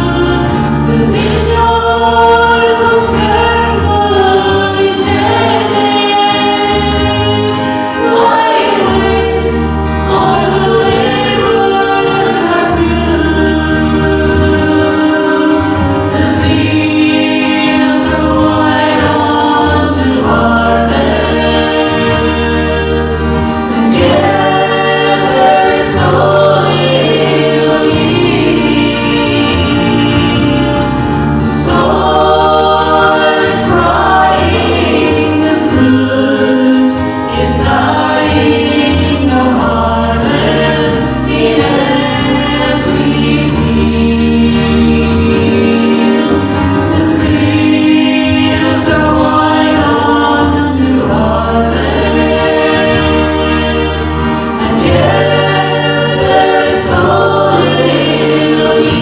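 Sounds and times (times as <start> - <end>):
low bass accompaniment: 0.0 - 59.0
voices singing in harmony: 0.0 - 59.0.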